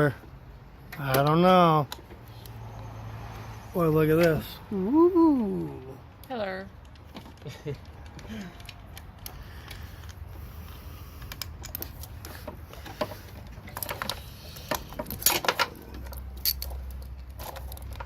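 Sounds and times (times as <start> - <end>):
metal tools clinking: 11.2 - 18.0.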